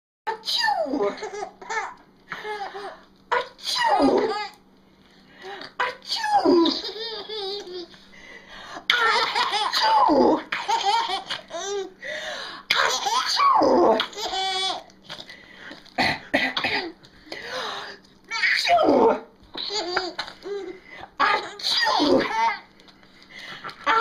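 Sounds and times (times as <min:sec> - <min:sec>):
baby laughing and squealing: 0:08.9 - 0:12.0, 0:19.6 - 0:22.6.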